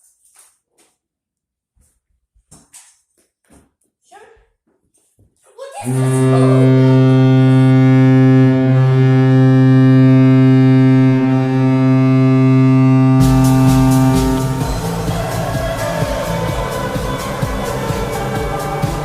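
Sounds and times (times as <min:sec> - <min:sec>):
deep goal horn blast: 0:05.8 - 0:19.0
music with a beat: 0:13.1 - 0:19.0.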